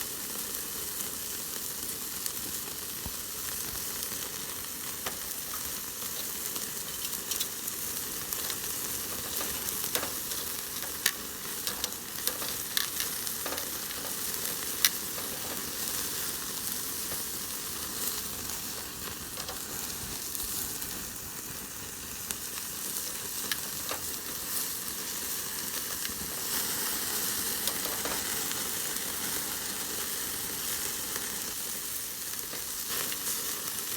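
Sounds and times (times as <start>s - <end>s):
meat sizzling: 0.0s - 33.9s
fat popping and crackling: 3.0s - 20.7s, 22.4s - 25.1s, 25.8s - 29.0s.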